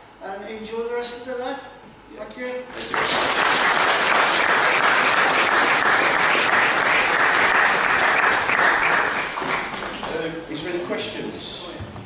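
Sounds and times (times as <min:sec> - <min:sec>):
audience applauding: 0:02.8 - 0:10.2.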